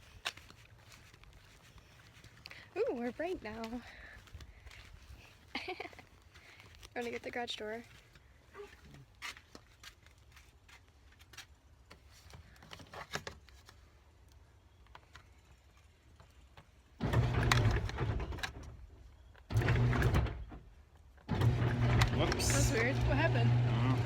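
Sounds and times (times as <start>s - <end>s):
garage door opener humming: 17.0s - 18.6s, 19.5s - 20.6s, 21.3s - 24.0s.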